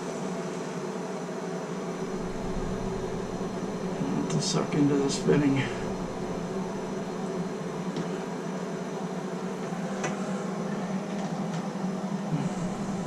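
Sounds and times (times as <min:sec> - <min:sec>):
torch flame rushing: 0:02.0 - 0:07.6.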